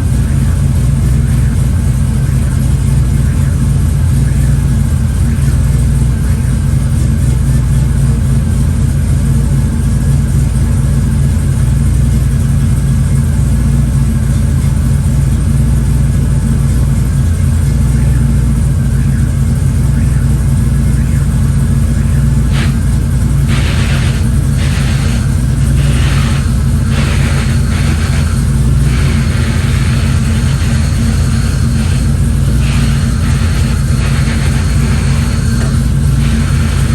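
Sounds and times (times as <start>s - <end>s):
vehicle engine droning: 0.0s - 36.9s
short hissy bursts: 22.4s - 36.9s.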